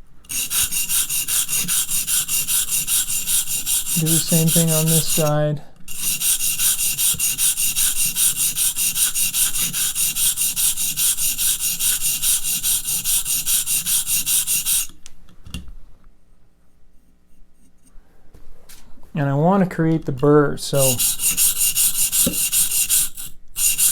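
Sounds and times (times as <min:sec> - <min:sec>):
sharpening stone scraping knife blade: 0:00.3 - 0:05.3, 0:05.9 - 0:14.9, 0:20.8 - 0:23.9.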